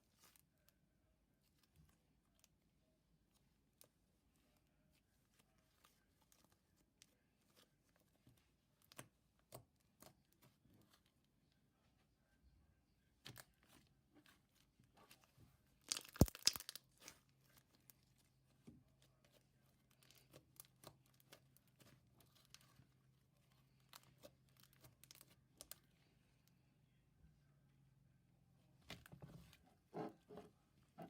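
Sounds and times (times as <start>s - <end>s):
slime squished by hand: 15.8s - 17.7s.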